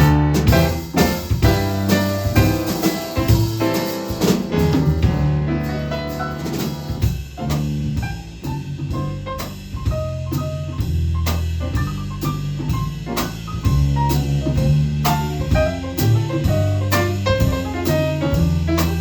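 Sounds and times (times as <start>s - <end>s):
bass line: 0.0s - 19.0s
drum kit: 0.0s - 19.0s
piano: 0.0s - 19.0s.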